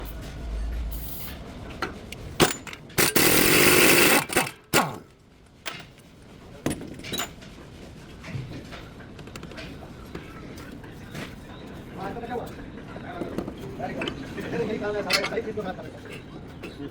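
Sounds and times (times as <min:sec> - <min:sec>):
power tool running: 0:02.4 - 0:05.0
sharp metal clicks and knocks: 0:02.4 - 0:05.1.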